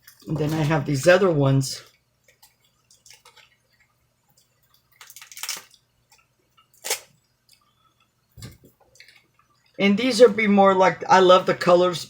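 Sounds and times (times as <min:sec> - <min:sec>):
plastic bags crinkling: 0:02.3 - 0:07.2.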